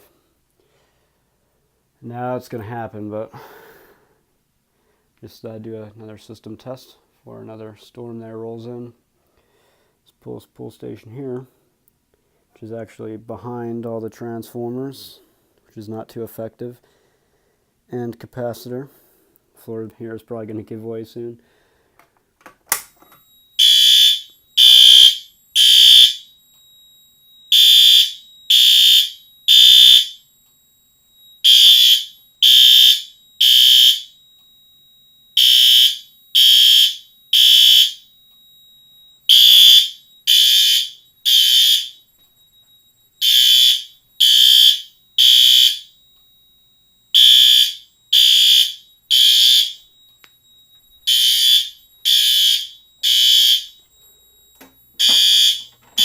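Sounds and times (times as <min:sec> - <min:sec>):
fire alarm horn blasts: 0:23.3 - 0:56.0.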